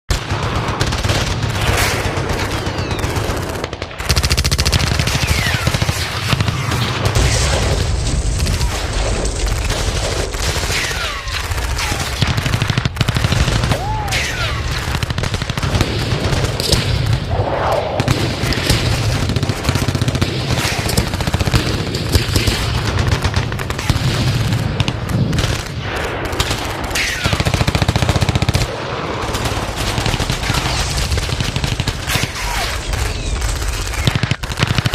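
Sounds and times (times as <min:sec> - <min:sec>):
gunshots: 0:00.1 - 0:34.9
machine-gun bursts: 0:00.3 - 0:07.7, 0:08.4 - 0:13.8, 0:18.5 - 0:24.0, 0:26.3 - 0:34.9.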